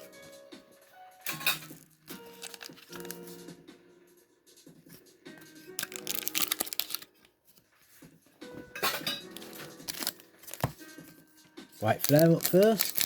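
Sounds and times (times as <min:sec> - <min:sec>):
soft background music: 0:00.0 - 0:13.0
crinkly packaging handling: 0:01.6 - 0:03.3, 0:05.8 - 0:07.7, 0:09.3 - 0:10.8, 0:11.8 - 0:13.0.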